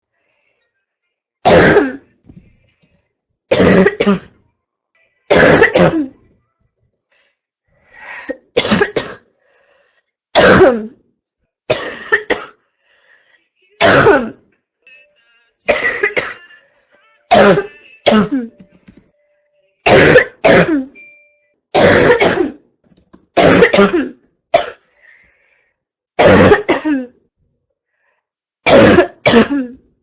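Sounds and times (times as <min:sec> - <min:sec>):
girl barking cough: 0:01.5 - 0:02.0, 0:03.5 - 0:04.4, 0:05.3 - 0:06.1, 0:08.4 - 0:09.3, 0:10.4 - 0:11.0, 0:11.7 - 0:12.6, 0:13.8 - 0:14.4, 0:15.7 - 0:16.4, 0:17.3 - 0:18.5, 0:19.9 - 0:20.9, 0:21.8 - 0:22.6, 0:23.4 - 0:24.8, 0:26.2 - 0:27.2, 0:28.7 - 0:29.8.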